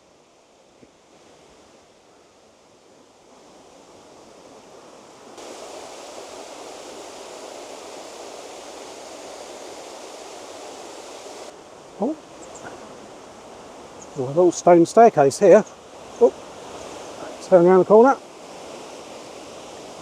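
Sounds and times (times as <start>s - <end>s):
water rushing down a gorge: 5.3s - 12.3s.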